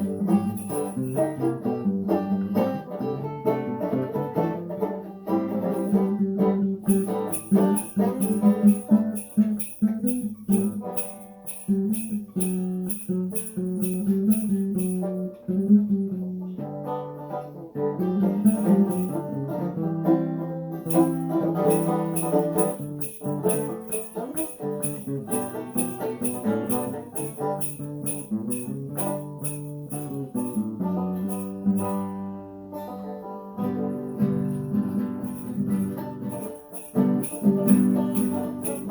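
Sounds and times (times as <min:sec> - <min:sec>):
sleigh bells shaken: 0:00.0 - 0:01.8, 0:05.5 - 0:06.1, 0:06.8 - 0:15.4, 0:18.4 - 0:19.5, 0:20.8 - 0:32.3, 0:33.9 - 0:38.9
acoustic guitar: 0:00.0 - 0:38.9
banjo: 0:00.0 - 0:38.9.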